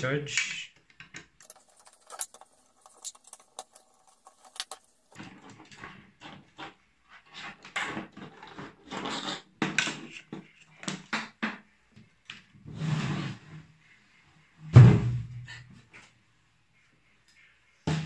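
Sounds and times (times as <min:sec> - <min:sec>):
objects knocking and clattering: 0:00.8 - 0:11.6.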